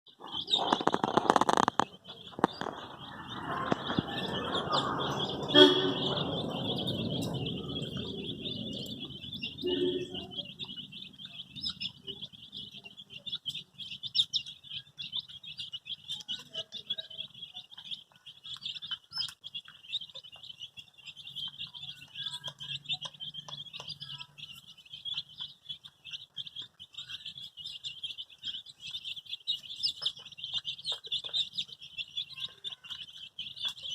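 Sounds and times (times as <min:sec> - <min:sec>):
loud background noise: 0:00.1 - 0:15.0
baby chicks peeping: 0:00.1 - 0:33.9.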